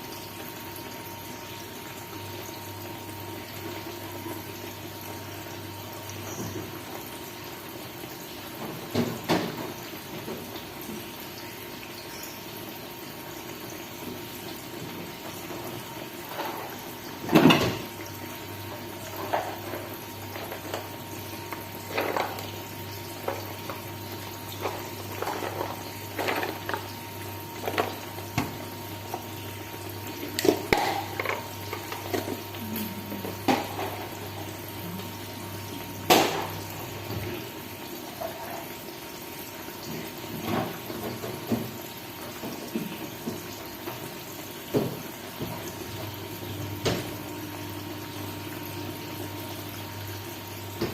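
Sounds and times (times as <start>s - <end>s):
pots and utensils clattering: 15.2s - 17.9s, 19.0s - 23.9s, 24.5s - 28.6s, 30.3s - 34.6s.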